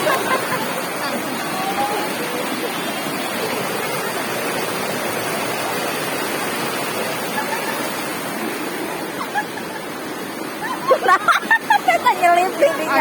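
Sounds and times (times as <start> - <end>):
waterfall and river rushing: 0.0 - 13.0.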